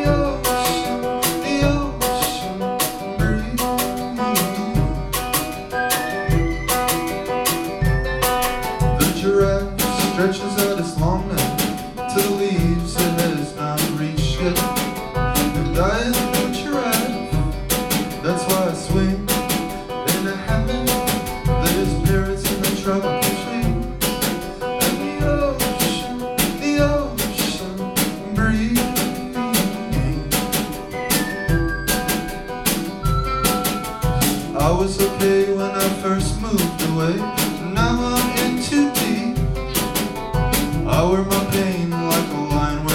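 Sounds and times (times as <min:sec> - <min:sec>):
plucked guitar: 0:00.0 - 0:42.9
steady drum beat: 0:00.0 - 0:42.9
bass: 0:03.2 - 0:03.6.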